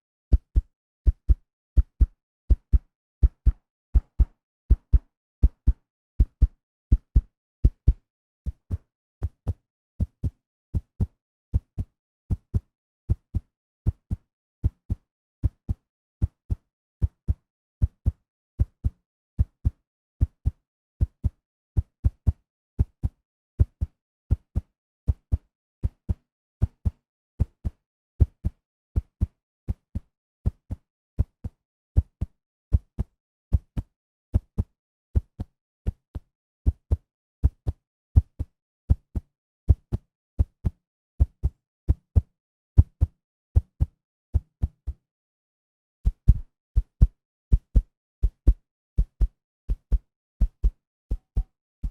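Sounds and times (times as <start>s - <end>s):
heartbeat thumps: 0.3s - 7.2s, 46.1s - 47.1s.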